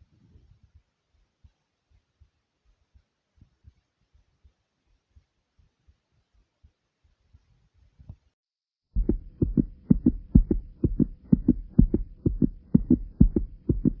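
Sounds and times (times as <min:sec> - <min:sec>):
human heartbeat thumps: 0:08.9 - 0:14.0
faint steady hum: 0:09.0 - 0:14.0.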